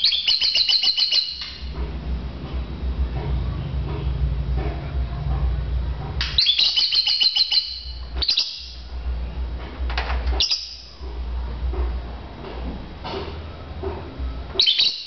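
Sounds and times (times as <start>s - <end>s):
bird chirping: 0.0s - 1.8s, 6.2s - 9.0s, 10.4s - 11.0s, 14.6s - 15.0s
low steady hum: 0.0s - 15.0s.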